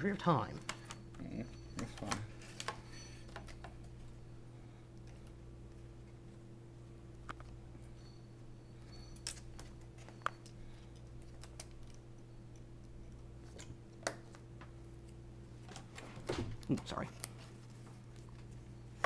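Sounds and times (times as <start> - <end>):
steady low hum: 0.0 - 19.0
small parts and tools clicking: 8.8 - 14.4.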